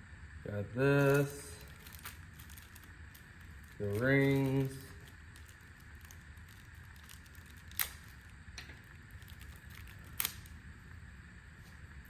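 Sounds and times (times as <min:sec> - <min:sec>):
low steady hum: 0:00.0 - 0:12.0
metal parts clicking: 0:01.0 - 0:10.5.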